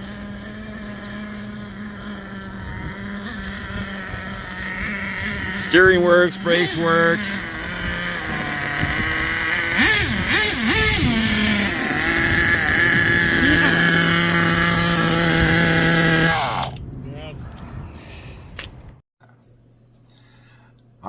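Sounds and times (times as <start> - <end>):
small two-stroke engine revving: 0.0 - 16.8.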